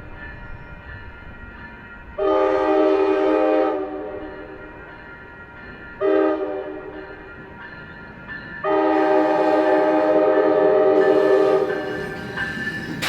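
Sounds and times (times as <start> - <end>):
locomotive air horn: 2.2 - 4.2, 6.0 - 6.9, 8.6 - 12.0.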